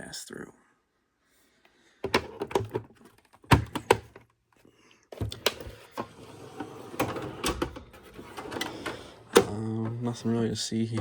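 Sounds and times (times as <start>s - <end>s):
tools knocking and clunking: 2.0s - 4.3s
metal drawer sliding: 5.2s - 11.0s.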